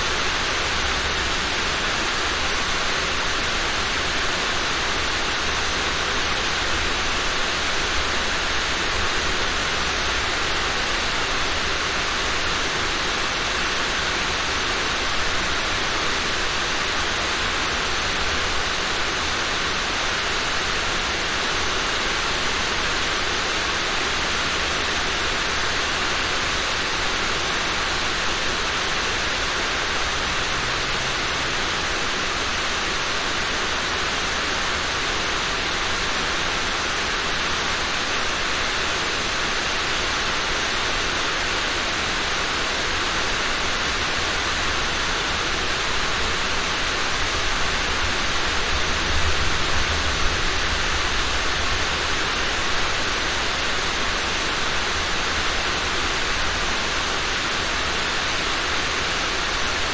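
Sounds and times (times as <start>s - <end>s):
steady rain: 0.0s - 59.9s
low rumble: 48.5s - 52.2s.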